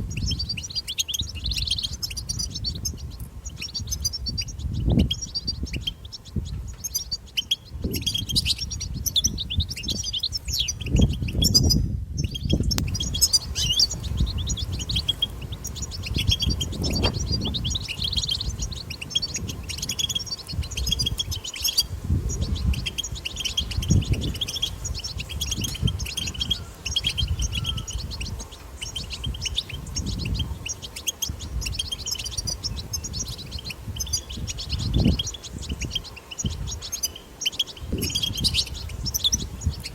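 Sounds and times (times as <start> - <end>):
goldfinch twittering: 0.1 - 39.9.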